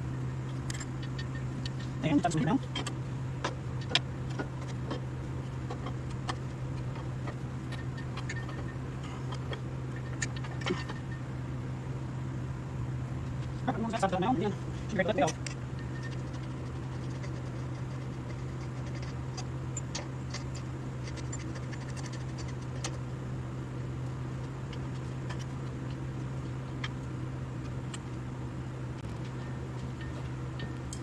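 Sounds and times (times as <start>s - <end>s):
steady low hum: 0.0s - 31.0s
metal tools clicking and tapping: 5.7s - 11.2s, 15.1s - 23.0s, 29.3s - 31.0s.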